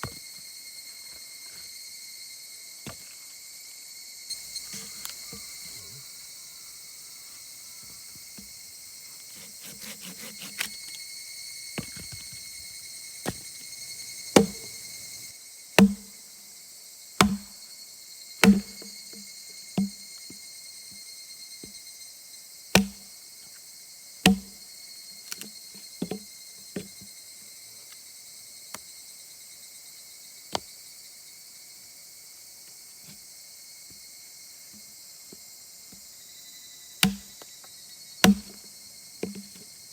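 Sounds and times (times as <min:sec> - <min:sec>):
insects chirring: 0:00.0 - 0:39.9
sharp knocks: 0:14.3 - 0:14.9, 0:15.8 - 0:16.1, 0:17.2 - 0:17.5, 0:18.4 - 0:18.9, 0:19.8 - 0:20.0, 0:22.8 - 0:23.0, 0:24.3 - 0:24.5.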